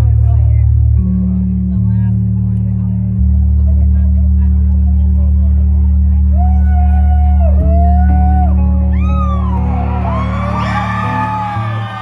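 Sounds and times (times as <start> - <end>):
crowd cheering and whooping: 6.4 - 12.0.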